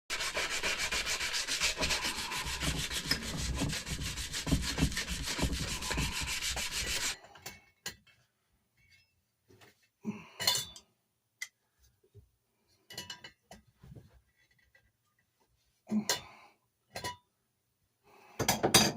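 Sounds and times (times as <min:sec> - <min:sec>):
rapid abrasive rubbing: 0:00.1 - 0:07.2.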